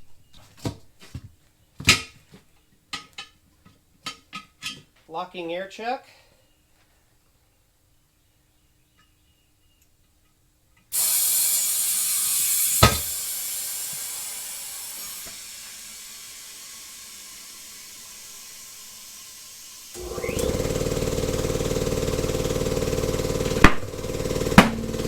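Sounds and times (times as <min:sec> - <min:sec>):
compressed air hissing into tyre: 0:10.9 - 0:25.0
motor running: 0:11.0 - 0:25.0
tyre bead popping bang: 0:12.8 - 0:13.2, 0:23.6 - 0:24.0, 0:24.6 - 0:24.9.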